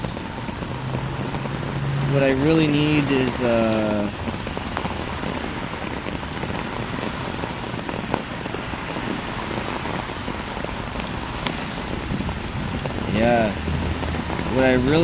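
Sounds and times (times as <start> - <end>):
heavy rain falling: 0.0 - 15.0.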